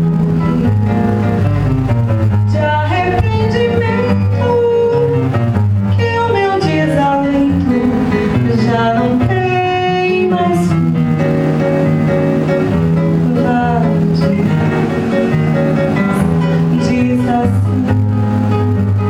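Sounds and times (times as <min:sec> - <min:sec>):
acoustic guitar playing: 0:00.0 - 0:19.0
woman singing: 0:02.5 - 0:11.0, 0:13.0 - 0:15.4, 0:16.0 - 0:18.5.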